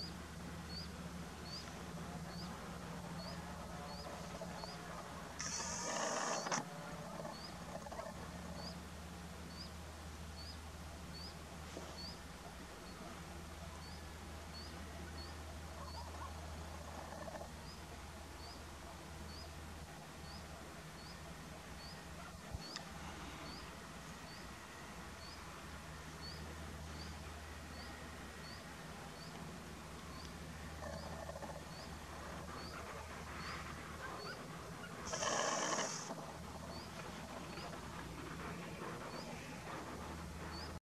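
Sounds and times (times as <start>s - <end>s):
small animal chirping: 5.4s - 6.6s, 35.0s - 36.1s.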